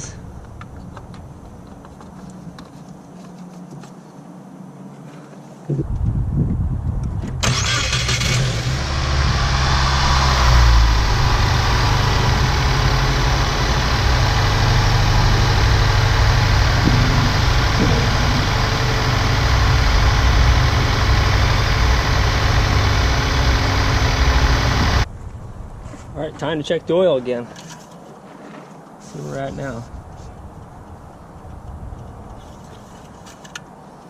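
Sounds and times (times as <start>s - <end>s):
car engine starting and idling: 7.2s - 25.1s.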